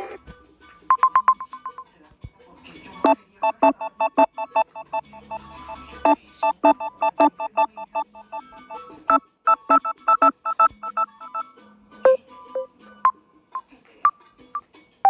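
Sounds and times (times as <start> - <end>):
phone ringtone electronic notes: 3.4 - 8.9, 9.5 - 11.4.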